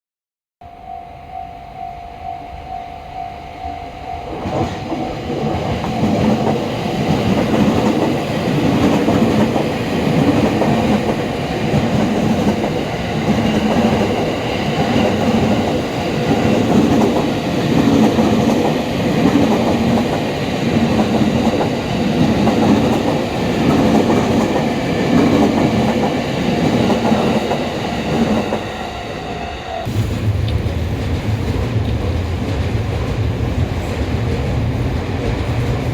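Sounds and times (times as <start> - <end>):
level crossing bell ringing: 0.6 - 4.6
train wheels clacking over rails: 4.4 - 29.0, 29.8 - 35.9.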